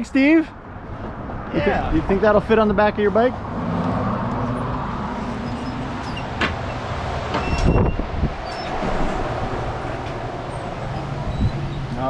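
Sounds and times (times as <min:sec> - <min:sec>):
knocks and clatters: 0:06.0 - 0:07.8.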